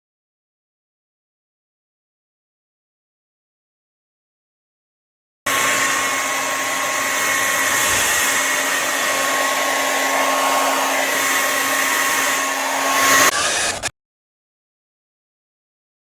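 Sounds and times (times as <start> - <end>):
hair dryer air rush: 5.5 - 13.9
hair dryer motor hum: 5.5 - 13.9.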